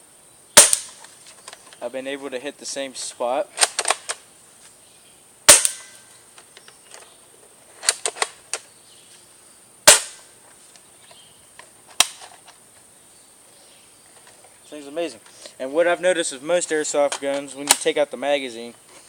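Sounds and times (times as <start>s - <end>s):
airsoft gun shots: 0.6s - 1.0s, 5.5s - 6.0s, 9.8s - 10.3s.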